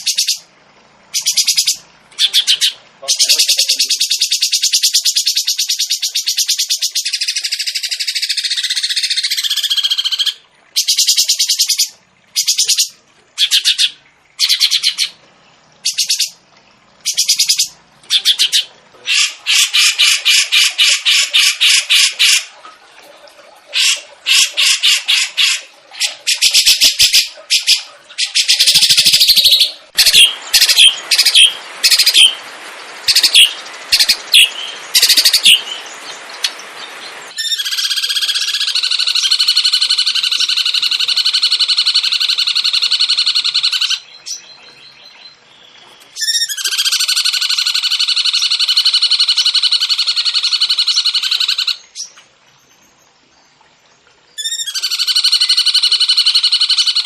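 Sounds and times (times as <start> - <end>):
songbird trilling: 0.0 - 0.4, 1.1 - 15.2, 15.8 - 16.4, 17.0 - 22.4, 23.8 - 32.4, 33.0 - 52.1, 54.4 - 57.0
faint hiss: 28.5 - 37.4.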